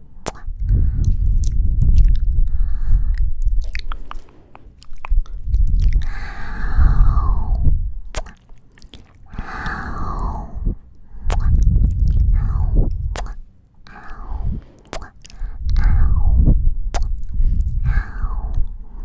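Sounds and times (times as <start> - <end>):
wet kissing smacks: 0.2 - 0.5, 3.4 - 6.1, 8.1 - 9.2, 11.3 - 12.3, 13.1 - 13.4, 14.8 - 15.8, 16.9 - 17.8.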